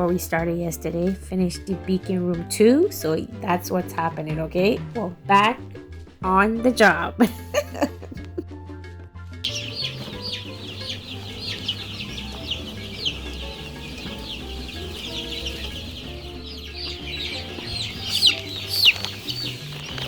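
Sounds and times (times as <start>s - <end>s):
chicks peeping: 9.4s - 20.0s.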